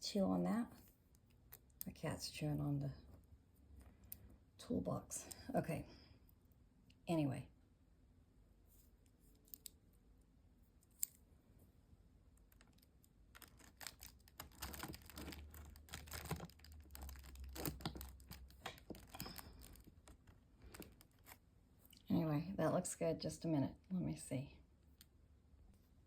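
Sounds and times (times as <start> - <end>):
rustling: 12.4 - 22.0
chain parts clicking and rattling: 13.4 - 19.9.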